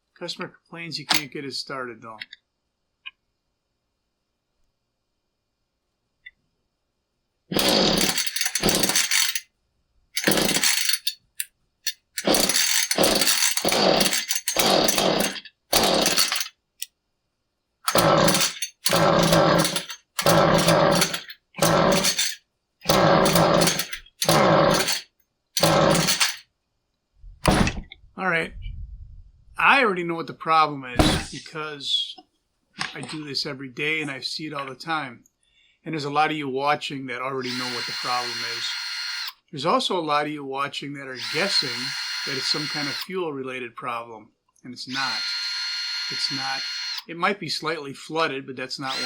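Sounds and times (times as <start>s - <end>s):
chainsaw recoil starter pulls: 7.5s - 9.4s, 10.2s - 11.2s, 11.9s - 16.5s, 17.9s - 25.0s, 25.6s - 26.4s, 37.5s - 38.7s, 41.2s - 43.1s, 45.0s - 45.2s, 46.1s - 47.0s
engine turning over: 7.5s - 9.4s, 10.2s - 11.1s, 12.2s - 16.5s, 17.9s - 25.0s, 25.6s - 26.4s.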